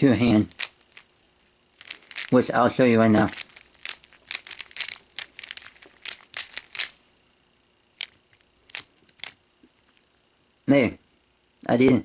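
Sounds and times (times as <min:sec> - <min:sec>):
plastic puzzle cube clicking: 0:00.5 - 0:01.1, 0:01.8 - 0:02.4, 0:03.2 - 0:07.0, 0:08.0 - 0:09.4.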